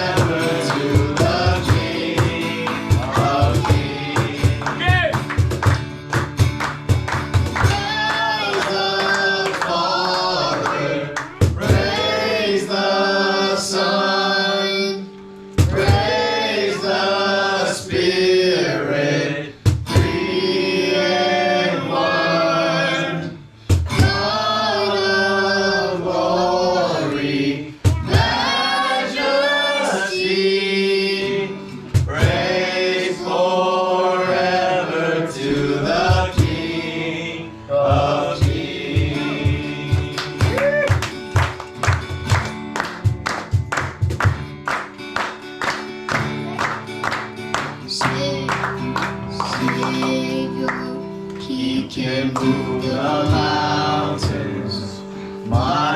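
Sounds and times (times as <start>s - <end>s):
group of voices singing: 0.0s - 4.8s, 7.6s - 40.8s, 47.9s - 55.9s
drum hits: 0.0s - 8.3s, 11.3s - 12.3s, 15.6s - 16.4s, 19.6s - 20.4s, 23.6s - 24.4s, 27.8s - 28.6s, 31.9s - 32.6s, 35.8s - 36.8s, 37.8s - 40.8s, 42.1s - 44.6s
instrumental backing: 0.0s - 9.6s, 35.4s - 51.6s.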